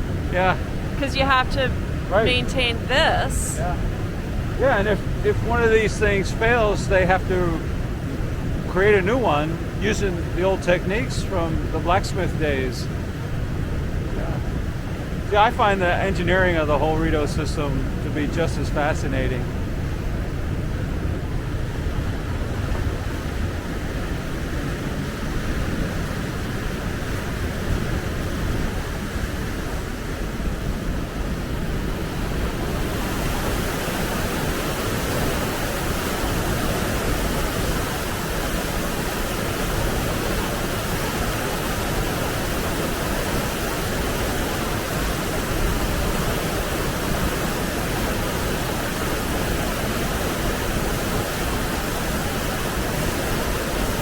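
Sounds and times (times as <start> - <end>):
river water rushing: 21.7 - 54.0.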